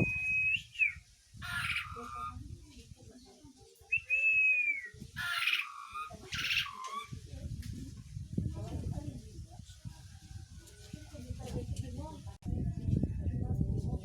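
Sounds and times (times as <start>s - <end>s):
bird whistling: 0.0s - 2.3s, 3.9s - 7.1s
bird chattering: 0.0s - 2.4s, 3.9s - 7.1s.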